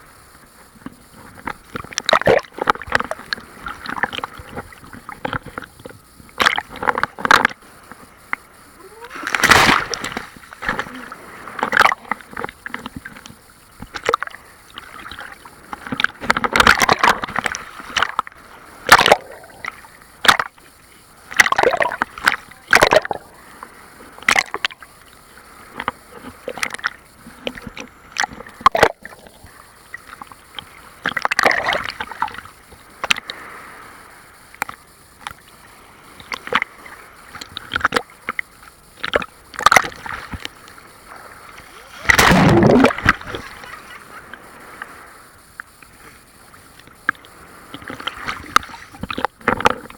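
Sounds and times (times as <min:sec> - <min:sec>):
sea waves splashing: 0:00.0 - 0:49.9.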